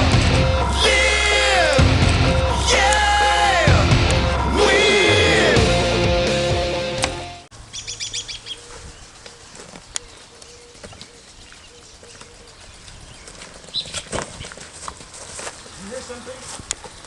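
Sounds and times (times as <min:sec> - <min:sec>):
hard rock song: 0:00.0 - 0:07.5
birds chirping: 0:00.0 - 0:17.0
bird chirping: 0:07.6 - 0:14.6
faint clicks and rustles: 0:08.6 - 0:17.0.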